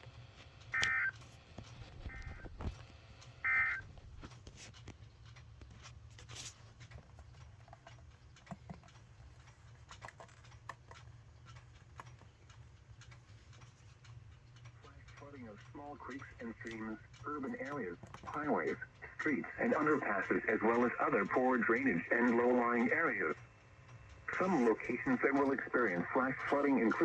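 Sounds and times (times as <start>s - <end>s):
faint radio hiss with crackles: 0.0s - 5.0s, 5.6s - 7.8s, 12.0s - 27.0s.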